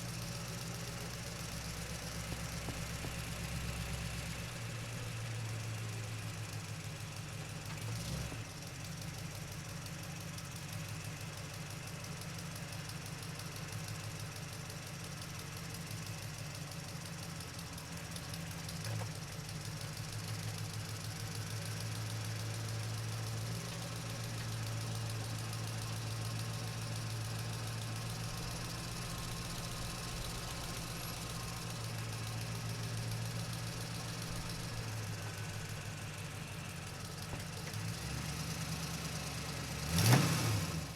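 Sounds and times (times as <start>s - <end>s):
truck engine running: 0.0s - 7.8s, 16.7s - 39.7s.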